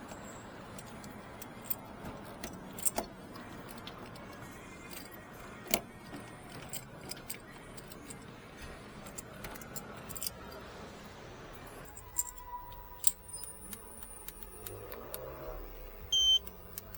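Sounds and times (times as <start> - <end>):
car key clicking and jingling: 0.0 - 10.8, 11.6 - 16.9.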